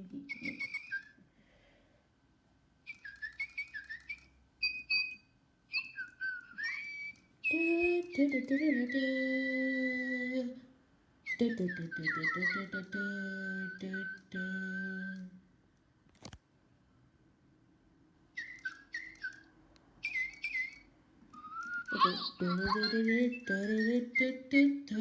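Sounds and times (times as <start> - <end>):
toy bird whistle-like tune: 0.3 - 1.2, 2.8 - 10.2, 11.2 - 15.3, 18.4 - 24.5
toy birds electronic tweets: 0.3 - 1.2, 2.8 - 9.2, 11.3 - 14.2, 18.4 - 24.3.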